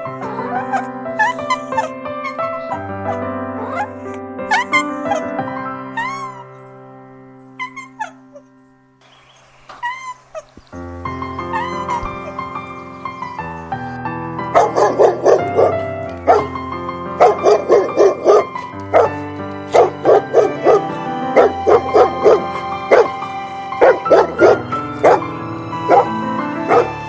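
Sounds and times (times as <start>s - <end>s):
dog barking: 0.0s - 6.5s, 11.5s - 23.2s, 23.8s - 27.0s
backing music: 10.7s - 27.0s.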